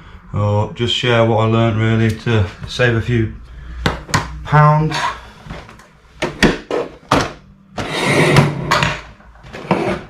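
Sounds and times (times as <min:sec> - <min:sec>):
rustling scrape: 0:07.8 - 0:08.8, 0:09.4 - 0:10.0.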